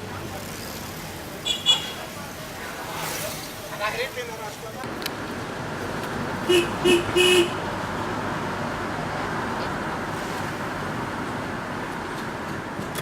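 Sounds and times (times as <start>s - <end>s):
vehicle road noise: 0.0s - 13.0s
vehicle horn toots: 1.4s - 2.1s, 6.4s - 7.7s.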